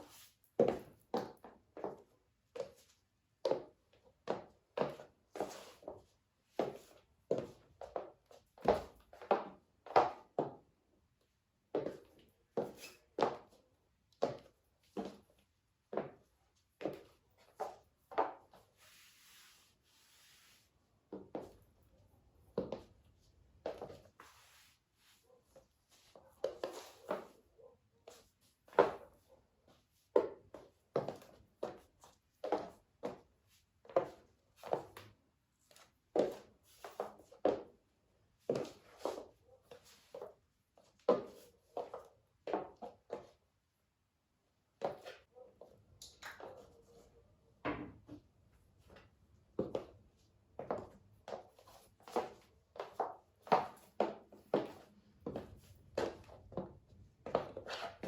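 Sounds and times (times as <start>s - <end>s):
shoe scuffs: 11.8s - 13.6s, 16.8s - 21.6s, 23.7s - 27.4s, 57.3s - 58.0s
high heels on hard floor: 50.6s - 58.0s.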